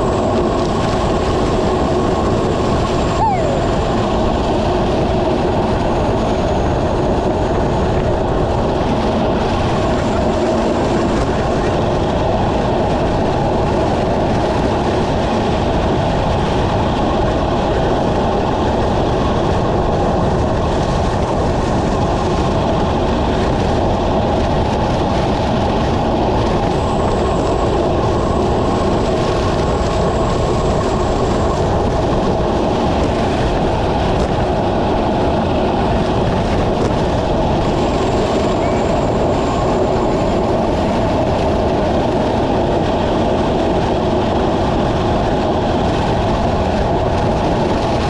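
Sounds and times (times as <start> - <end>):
road noise: 0.0 - 48.0
wind rush on microphone: 0.0 - 48.0.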